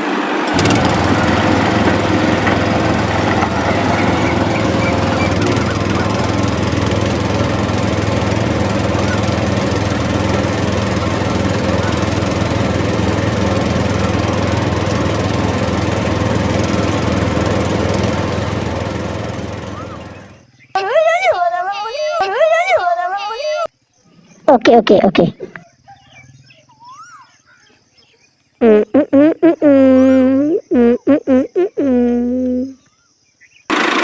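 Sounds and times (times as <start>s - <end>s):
tractor motor running: 0.0s - 20.5s, 33.7s - 34.0s.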